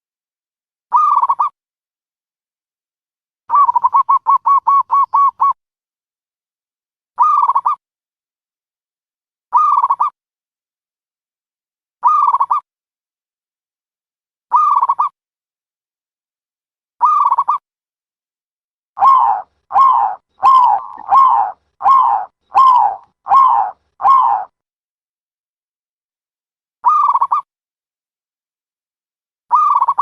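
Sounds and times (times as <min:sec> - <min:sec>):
dove cooing: 0:19.0 - 0:24.5.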